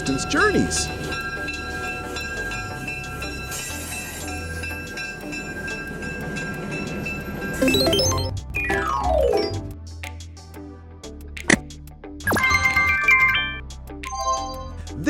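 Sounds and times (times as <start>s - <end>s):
train low rumble: 0.0s - 7.6s
steady high tones: 0.0s - 9.6s
rising and falling musical run: 0.2s - 9.8s.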